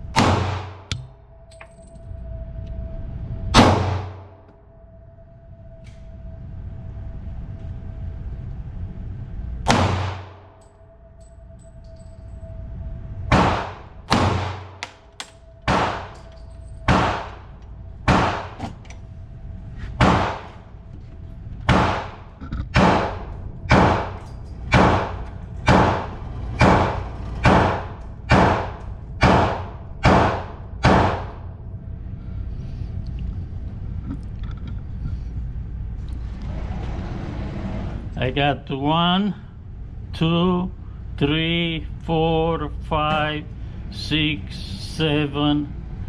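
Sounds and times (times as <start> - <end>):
pistol shots: 0.2 - 1.1, 3.6 - 4.2, 9.7 - 10.4, 13.3 - 16.2, 16.9 - 17.4, 18.1 - 18.6, 20.0 - 20.6, 21.7 - 31.4.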